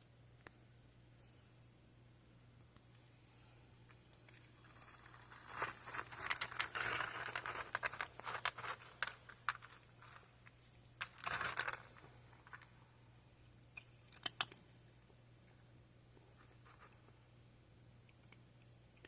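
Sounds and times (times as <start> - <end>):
plastic packaging crinkling: 4.6 - 10.3, 11.0 - 12.7.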